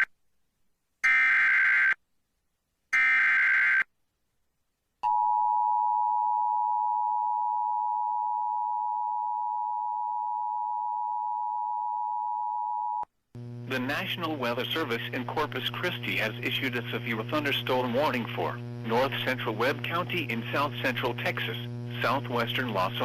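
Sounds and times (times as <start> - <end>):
harsh buzzing data bursts: 13.4 - 23.0.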